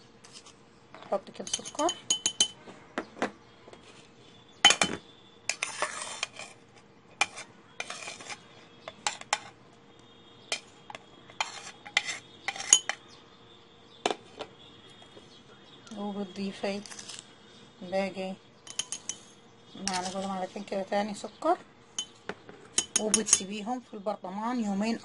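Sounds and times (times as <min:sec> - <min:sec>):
metal spoon clinking on glass jar: 0:01.4 - 0:02.6, 0:11.4 - 0:13.0, 0:18.6 - 0:19.3, 0:22.0 - 0:22.2, 0:22.8 - 0:23.5.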